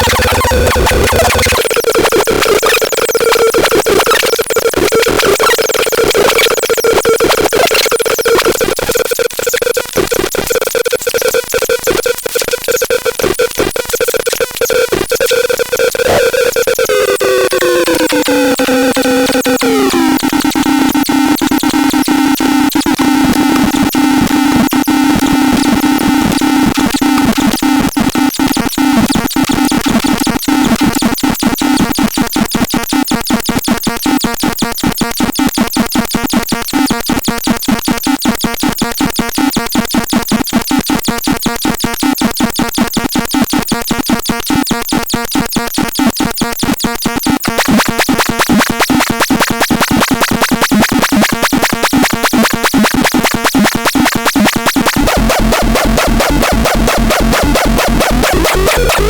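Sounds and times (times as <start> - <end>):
synthesizer held tones: 0.0 - 1.9, 14.7 - 21.9, 47.4 - 59.0
synthesizer repeating pulses: 0.0 - 3.1, 15.9 - 21.1, 47.4 - 59.0.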